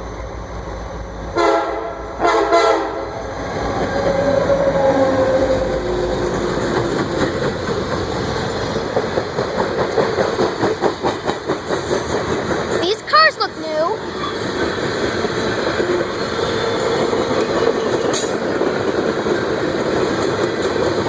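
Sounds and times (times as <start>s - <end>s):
diesel locomotive rumble: 0.0s - 21.0s
train horn blasts: 1.3s - 3.1s
train cars clacking over rail joints: 5.5s - 21.0s.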